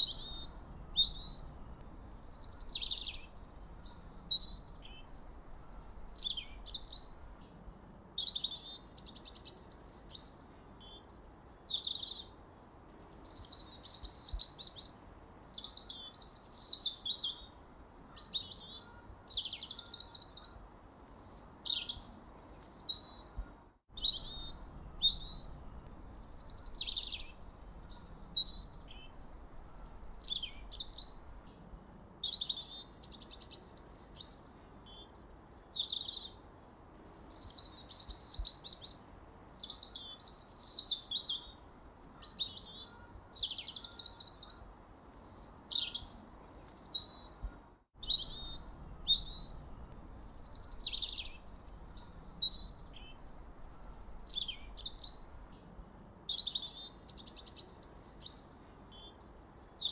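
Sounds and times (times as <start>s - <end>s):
songbirds chirping and singing: 0.0s - 7.6s, 24.0s - 31.4s, 48.0s - 55.7s
faint steady hiss: 0.0s - 43.3s, 44.1s - 59.9s.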